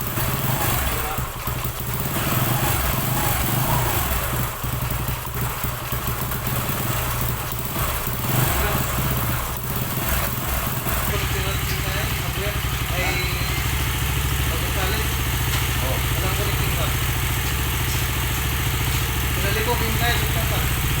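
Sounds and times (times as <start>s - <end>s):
motorcycle engine running: 0.0s - 21.0s.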